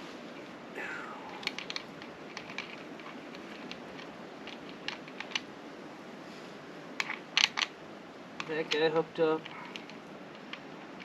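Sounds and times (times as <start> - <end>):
background hiss: 0.0 - 11.0
hands handling parts clicking: 1.3 - 5.5, 7.0 - 7.7, 8.4 - 11.0.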